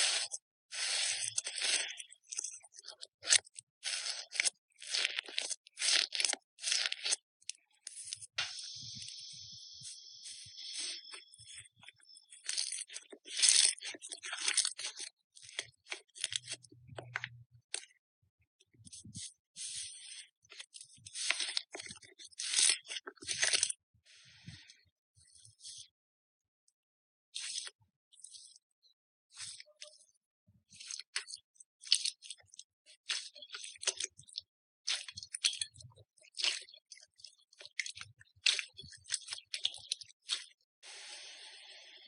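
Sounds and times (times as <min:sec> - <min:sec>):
slime crackling and popping: 0:03.2 - 0:07.6
hiss of stretching slime: 0:40.8 - 0:42.0.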